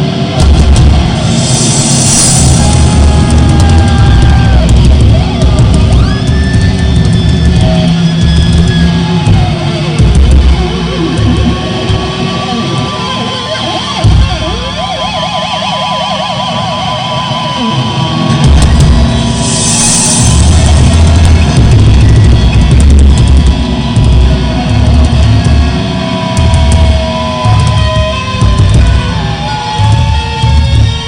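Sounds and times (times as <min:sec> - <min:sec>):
heavy metal band playing live: 0:00.0 - 0:31.0
wavering high note: 0:01.1 - 0:06.1.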